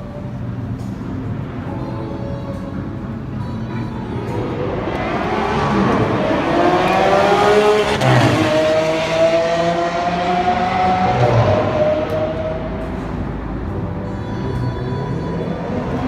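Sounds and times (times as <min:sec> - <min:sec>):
car engine accelerating: 0:04.4 - 0:13.7.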